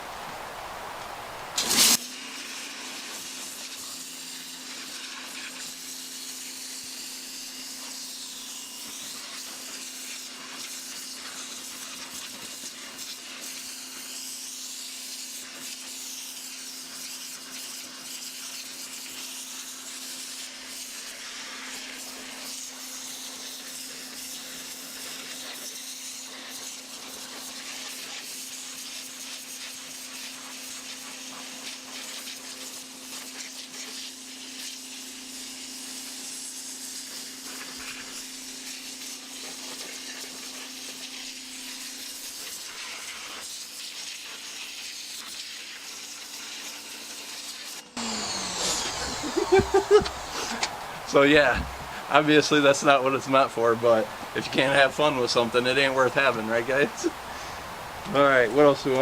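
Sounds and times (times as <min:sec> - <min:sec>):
pressure washer pump humming: 0:00.0 - 0:29.6, 0:48.0 - 0:59.0
water jet hissing on cardboard: 0:00.0 - 0:59.0.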